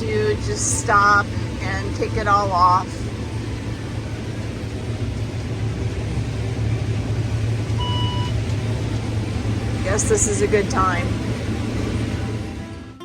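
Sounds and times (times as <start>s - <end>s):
combine harvester low hum: 0.0s - 13.0s
short electronic beep: 7.8s - 8.4s.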